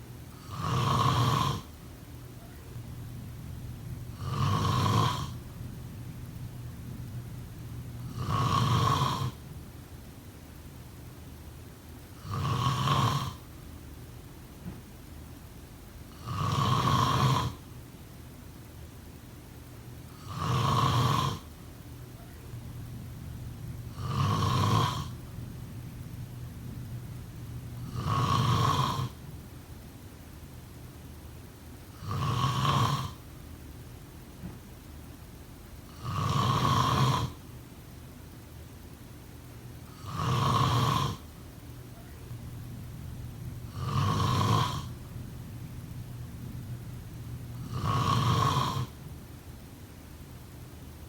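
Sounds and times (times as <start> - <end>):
person snoring: 0.4 - 1.7, 4.1 - 5.4, 8.0 - 9.4, 12.2 - 13.4, 16.1 - 17.6, 20.2 - 21.5, 23.8 - 25.4, 27.7 - 29.2, 32.0 - 33.2, 35.9 - 37.4, 39.9 - 41.3, 42.6 - 45.2, 47.1 - 49.0
quiet breathing: 22.2 - 29.4, 39.9 - 49.2.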